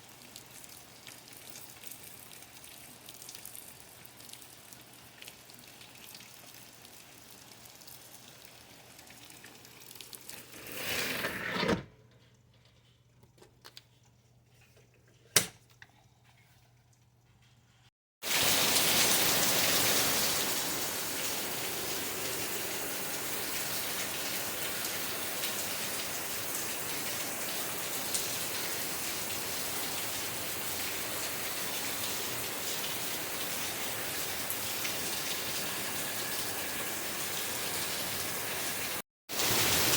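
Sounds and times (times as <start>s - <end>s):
heavy rain: 18.2s - 39.9s
steady rainfall: 18.2s - 39.9s.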